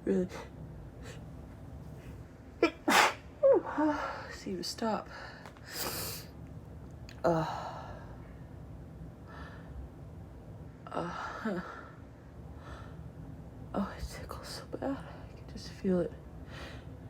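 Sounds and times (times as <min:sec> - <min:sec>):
woman sneezing: 0:02.6 - 0:03.2.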